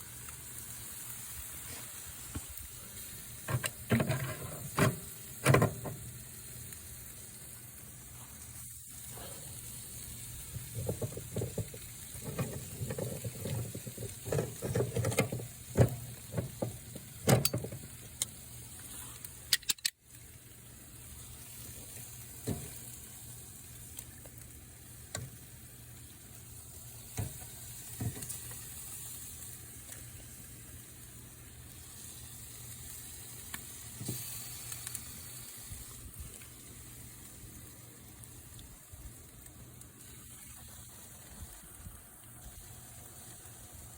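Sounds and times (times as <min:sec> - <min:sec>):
meat sizzling on a grill: 0:00.0 - 0:43.9
clicks and knocks: 0:10.8 - 0:17.8.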